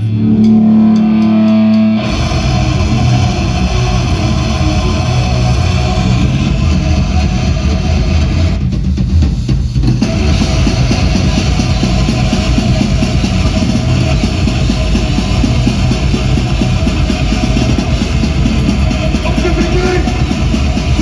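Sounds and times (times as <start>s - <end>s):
fast dense drumming: 0.0s - 21.0s
live rock band playing: 9.4s - 21.0s.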